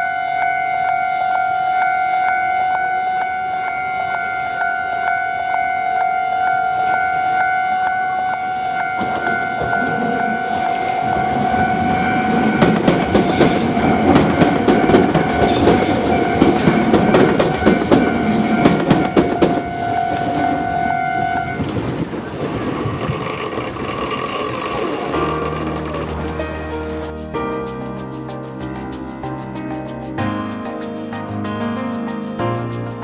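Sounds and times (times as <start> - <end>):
train wheels clattering over rails: 9.0 - 27.1.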